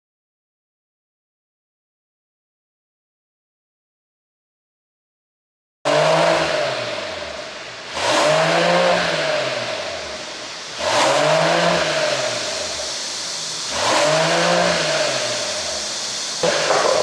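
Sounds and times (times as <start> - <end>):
car engine revving: 5.9 - 17.0.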